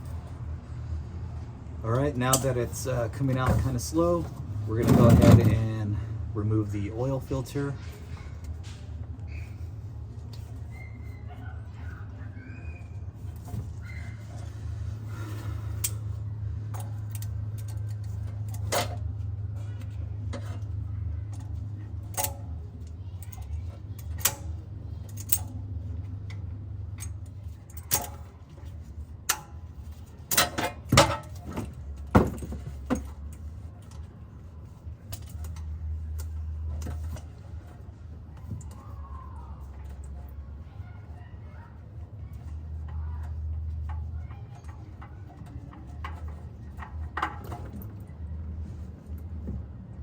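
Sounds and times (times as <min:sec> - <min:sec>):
hand tools clinking on metal: 0:01.9 - 0:05.9.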